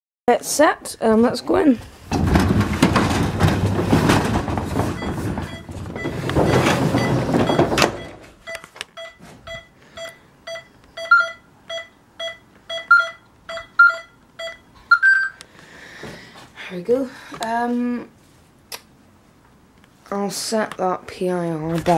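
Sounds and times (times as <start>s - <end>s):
rustling and clattering: 1.7s - 9.6s, 21.6s - 21.9s
alarm keypad beeping: 5.5s - 15.4s.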